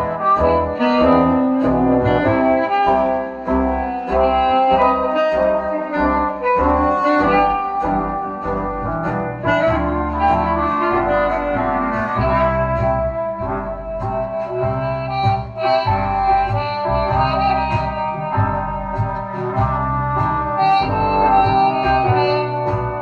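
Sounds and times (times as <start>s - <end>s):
bass line: 0.0s - 23.0s
reed instruments playing melody: 0.0s - 23.0s.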